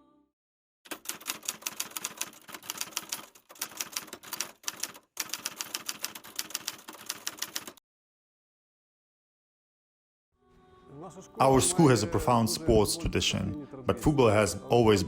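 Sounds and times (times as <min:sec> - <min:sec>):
typewriter keystroke clicks: 0:00.9 - 0:07.8.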